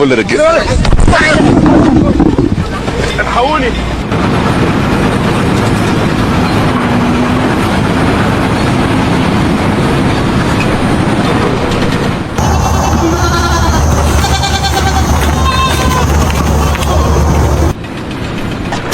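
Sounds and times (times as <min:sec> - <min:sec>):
loud mechanical rattling: 0:04.0 - 0:18.9.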